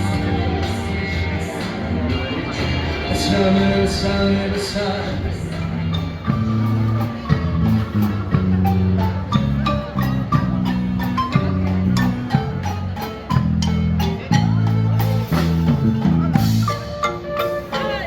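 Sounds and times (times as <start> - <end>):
marimba music: 0.0 - 18.0
light percussion: 5.2 - 18.0.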